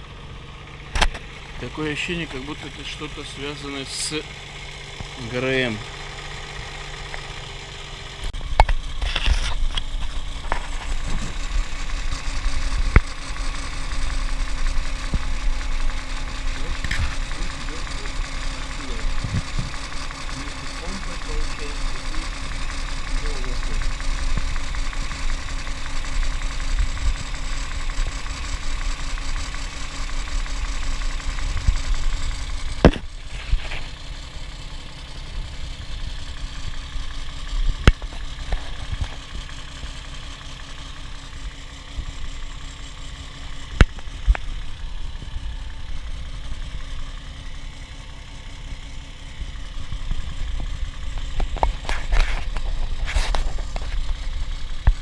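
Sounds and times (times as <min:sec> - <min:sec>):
car engine idling: 0:00.0 - 0:55.0
engine knocking: 0:00.0 - 0:55.0.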